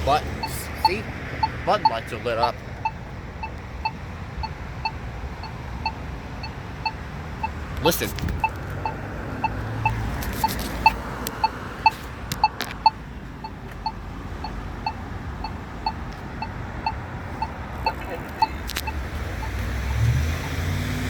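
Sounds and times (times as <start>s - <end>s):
crosswalk locator tone beeping: 0.0s - 21.0s.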